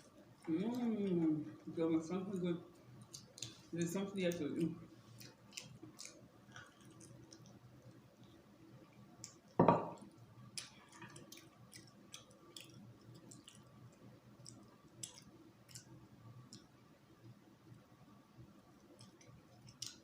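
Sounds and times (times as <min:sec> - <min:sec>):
wet lip smacks while eating: 0:14.4 - 0:16.7.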